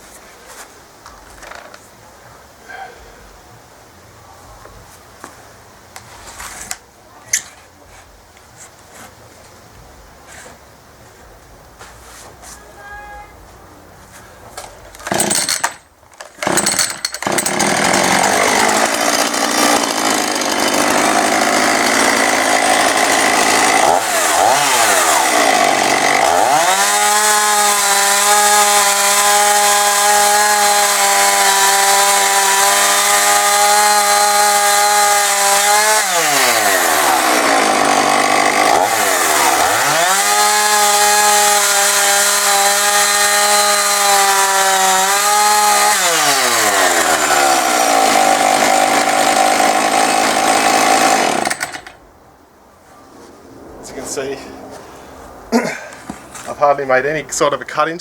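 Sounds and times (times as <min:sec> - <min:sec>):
chainsaw cutting into wood: 0:15.0 - 0:52.0.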